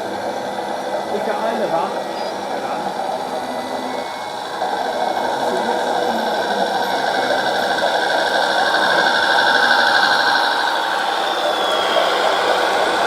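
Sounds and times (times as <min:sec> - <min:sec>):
toy truck electric motor whining: 0:00.0 - 0:13.0.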